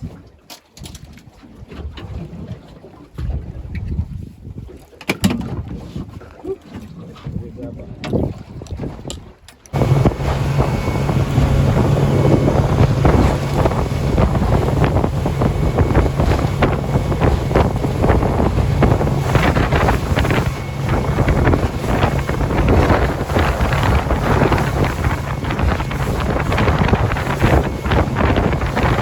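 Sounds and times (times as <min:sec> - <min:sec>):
wind buffeting microphone: 0:03.2 - 0:04.7, 0:07.2 - 0:29.0
boat motor running: 0:09.7 - 0:29.0
water rushing past: 0:09.8 - 0:29.0.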